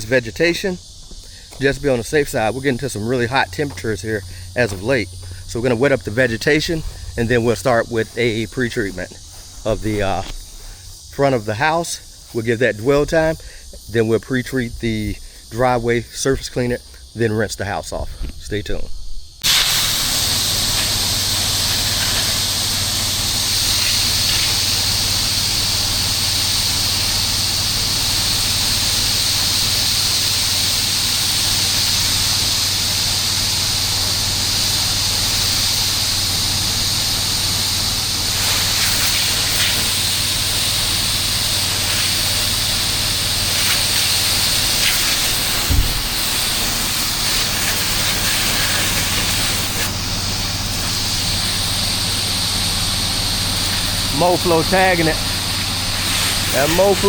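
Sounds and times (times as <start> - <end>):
pump engine humming: 0.0 - 12.2, 19.4 - 57.0
water spraying from hose: 19.4 - 57.0
brief thump: 45.6 - 46.2.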